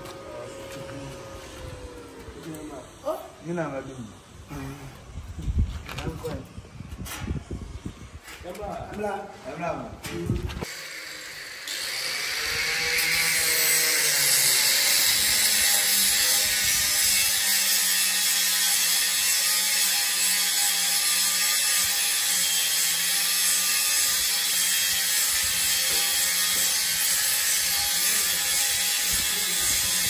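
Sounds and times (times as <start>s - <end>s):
power tool grinding: 10.6s - 30.0s.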